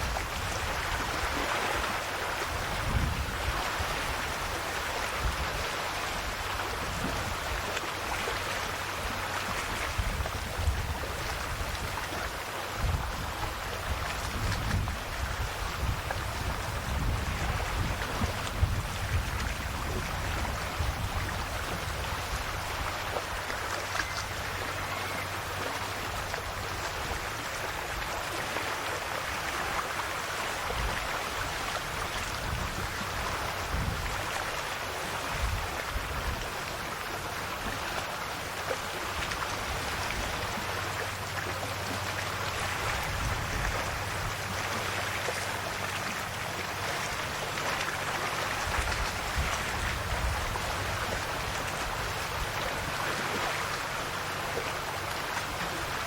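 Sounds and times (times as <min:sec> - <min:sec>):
small waves lapping on shore: 0:00.0 - 0:56.0.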